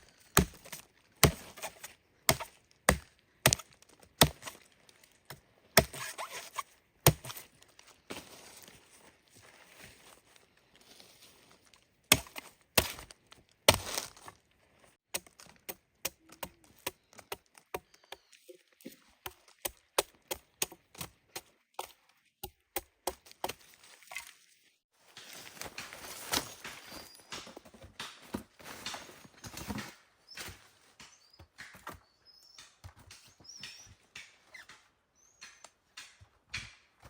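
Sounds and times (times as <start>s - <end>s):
blade chopping wood: 0.3s - 4.6s, 5.3s - 7.5s, 12.1s - 13.1s, 13.7s - 14.2s, 15.1s - 18.3s, 19.2s - 23.6s, 25.1s - 37.0s.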